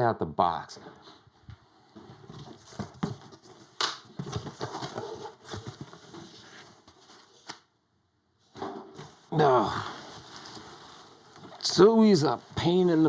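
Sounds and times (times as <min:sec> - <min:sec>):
cardboard rustling and scraping: 0:01.9 - 0:07.5, 0:09.0 - 0:13.0.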